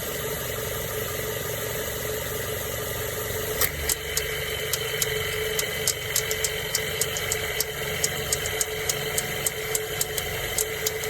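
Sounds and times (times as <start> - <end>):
car engine humming: 3.6 - 11.0
compressor clicking: 3.6 - 11.0.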